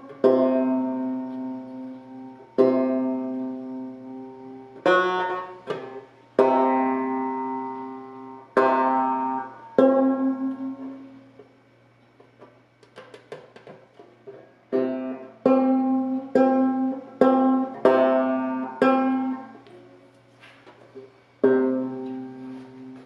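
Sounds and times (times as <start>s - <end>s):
banjo plucked and strummed: 0.0s - 11.1s, 14.3s - 19.6s, 21.4s - 23.0s.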